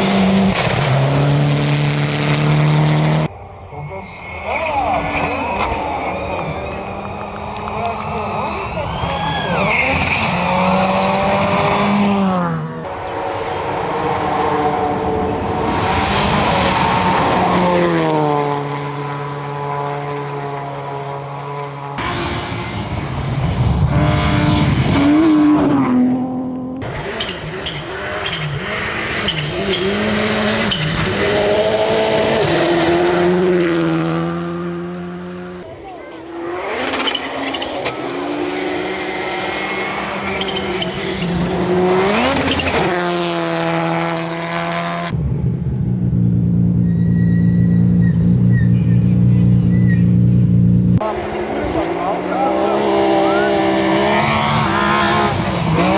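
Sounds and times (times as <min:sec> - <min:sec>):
rally car engine revving: 0:00.0 - 0:55.9.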